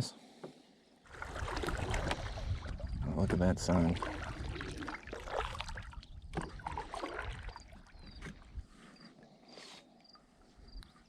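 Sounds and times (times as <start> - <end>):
water sloshing: 1.1 - 8.7.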